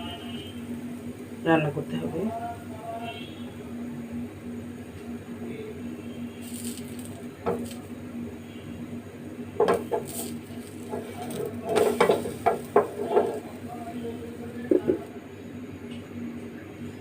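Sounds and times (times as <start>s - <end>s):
steady low hum: 0.0s - 17.0s
utensils tapping cookware: 9.6s - 13.4s.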